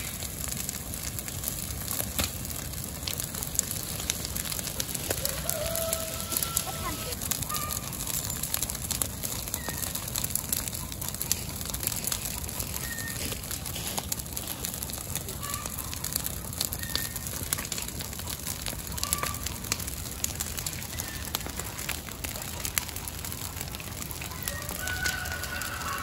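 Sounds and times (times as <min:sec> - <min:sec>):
wood fire crackling: 0:00.0 - 0:26.0
chickens calling: 0:03.8 - 0:17.0, 0:17.7 - 0:19.9, 0:20.9 - 0:26.0.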